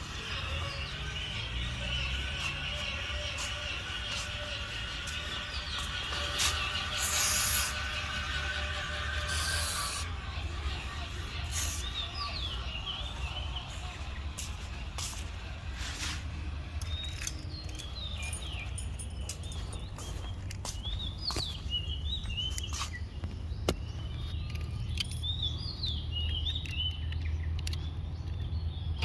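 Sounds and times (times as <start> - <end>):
birds chirping: 0.0 - 29.0
aerosol spray hissing: 9.3 - 10.1.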